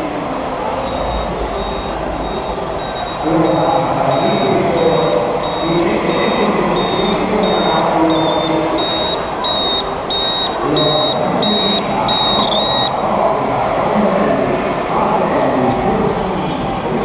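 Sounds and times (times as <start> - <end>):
reversing alarm beeping: 0.7 - 13.1.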